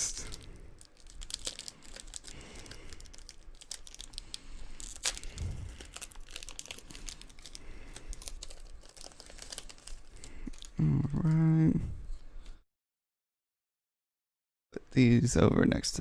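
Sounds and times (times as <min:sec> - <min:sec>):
foil wrapper crinkling and tearing: 0:00.0 - 0:10.8.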